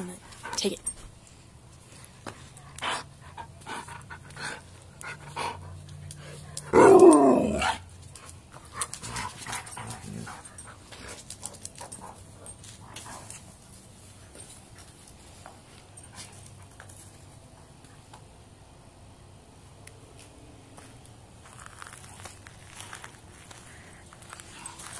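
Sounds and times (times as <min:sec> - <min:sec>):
dog panting: 0:02.4 - 0:06.7, 0:08.2 - 0:13.6
dog growling: 0:06.6 - 0:07.8.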